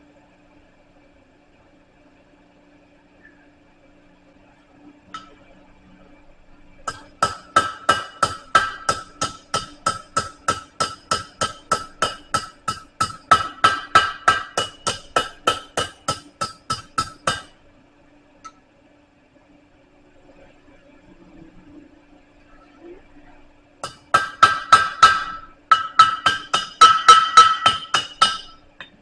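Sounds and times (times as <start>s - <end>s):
hammer ringing on anvil: 6.9s - 17.5s, 23.8s - 28.6s.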